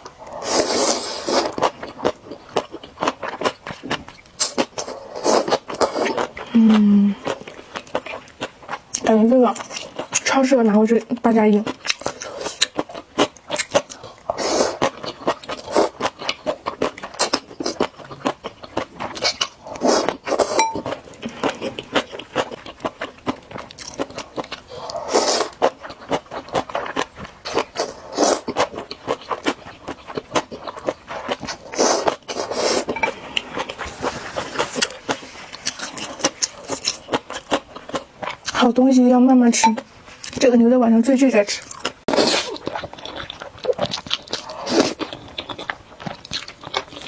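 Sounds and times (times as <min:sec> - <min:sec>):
crunchy chewing and biting: 0:21.5 - 0:38.6, 0:41.6 - 0:47.0.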